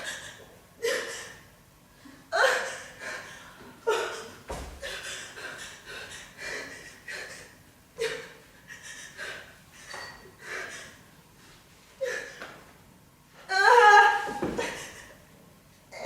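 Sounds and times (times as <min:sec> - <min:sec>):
person breathing raggedly: 0:04.8 - 0:11.1.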